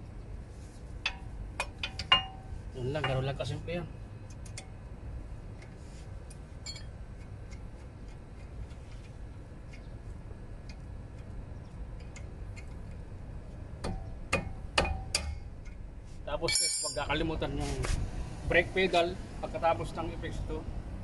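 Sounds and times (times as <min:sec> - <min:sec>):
low background rumble: 0:00.0 - 0:21.0.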